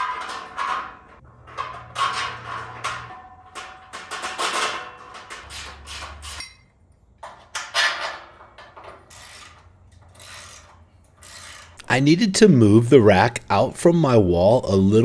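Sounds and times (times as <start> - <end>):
metal parts knocking and clanking: 0.0 - 10.8.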